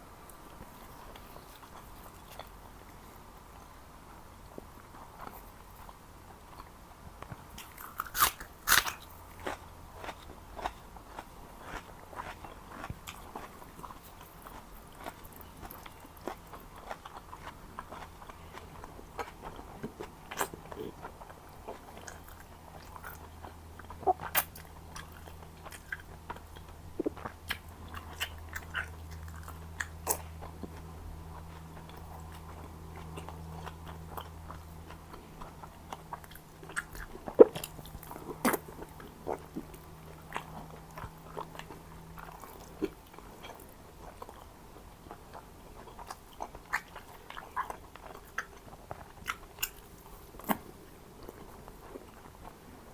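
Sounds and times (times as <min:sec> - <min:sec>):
chewing and biting: 0:00.4 - 0:03.2, 0:04.5 - 0:52.9
small crunches: 0:07.2 - 0:20.9.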